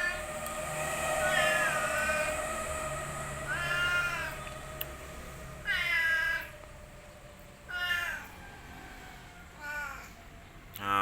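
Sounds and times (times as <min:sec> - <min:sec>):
cat meowing: 0:01.2 - 0:02.3, 0:03.5 - 0:04.4, 0:05.6 - 0:06.5, 0:07.7 - 0:08.3, 0:09.6 - 0:10.1.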